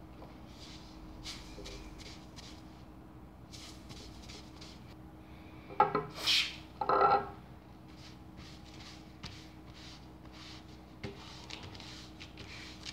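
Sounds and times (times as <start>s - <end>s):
cloth rubbing cardboard sleeve: 3.5s - 4.9s, 7.9s - 12.9s.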